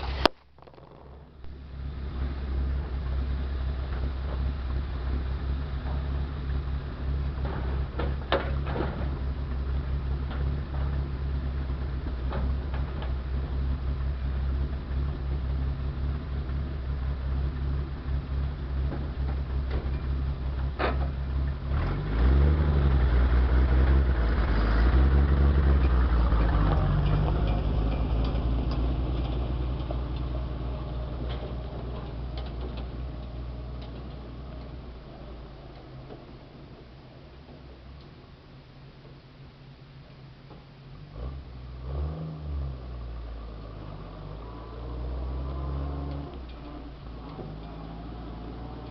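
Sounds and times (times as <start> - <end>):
truck engine idling and revving: 0.0 - 48.9
sharp engine knocks: 7.3 - 9.4.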